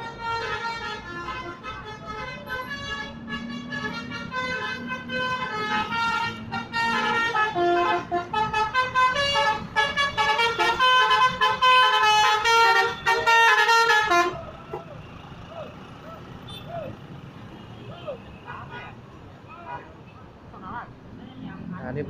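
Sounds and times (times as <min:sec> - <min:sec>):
multi-tone musical bus horn: 0:00.0 - 0:15.0.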